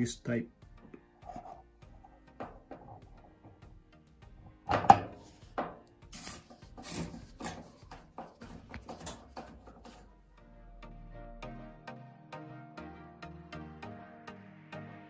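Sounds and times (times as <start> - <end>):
screwdriver and panel knocks: 4.6 - 5.8, 7.4 - 10.0.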